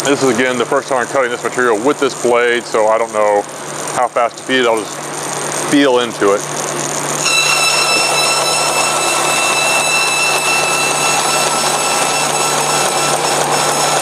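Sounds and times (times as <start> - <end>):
bandsaw hum: 7.1 - 14.0
high blade whine: 7.1 - 14.0.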